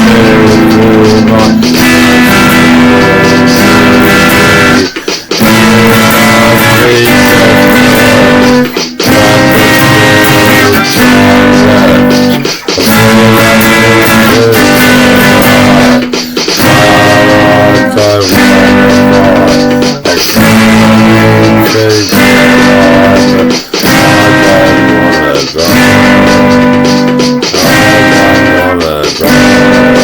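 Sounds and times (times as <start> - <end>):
instrumental guitar music with bass: 0.0 - 30.0.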